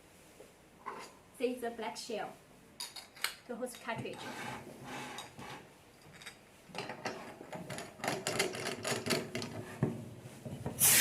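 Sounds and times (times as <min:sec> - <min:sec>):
loud gas hiss: 0:10.8 - 0:11.0.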